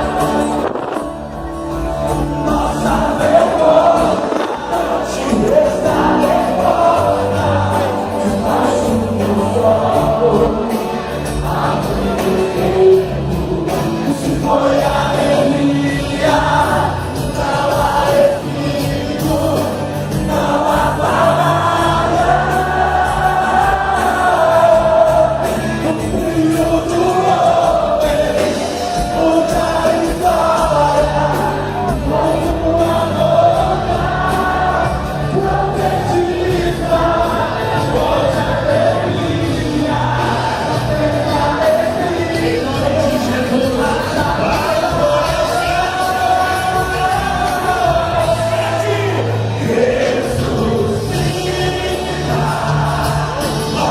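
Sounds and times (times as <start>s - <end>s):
group of voices singing: 0.0s - 53.9s
steady bass: 0.0s - 53.9s
worship band playing: 0.0s - 53.9s.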